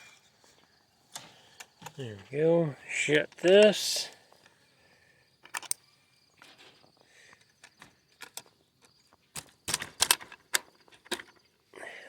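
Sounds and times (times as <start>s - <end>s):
faint insect trill: 0.0s - 12.0s
metal cage door clicks and rattles: 9.3s - 11.3s.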